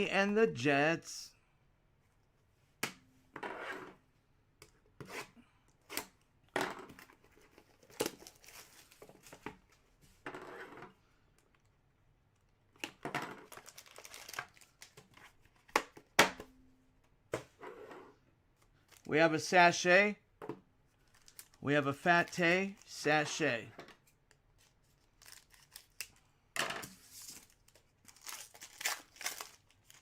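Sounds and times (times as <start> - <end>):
cards rustling: 7.0 - 9.4, 13.4 - 16.0, 21.0 - 23.6, 24.5 - 26.2, 27.0 - 30.0
card pack wrappers crinkling: 7.6 - 9.4, 13.4 - 15.6, 21.0 - 23.0, 24.8 - 26.2, 27.1 - 30.0.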